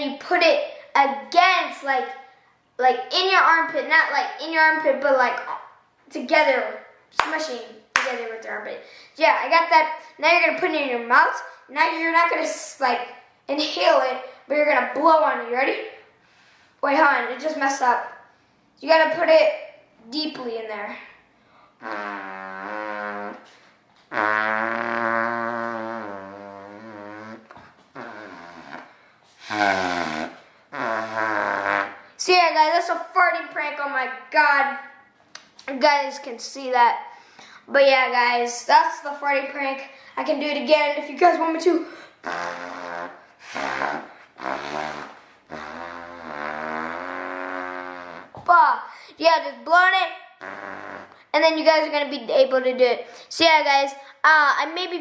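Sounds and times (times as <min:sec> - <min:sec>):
armpit fart noises: 0:21.8 - 0:32.1, 0:42.1 - 0:48.6, 0:50.4 - 0:51.3.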